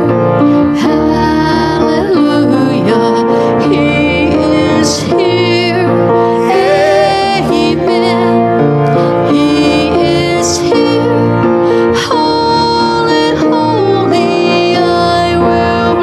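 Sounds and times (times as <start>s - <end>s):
person singing held notes: 6.5s - 7.4s.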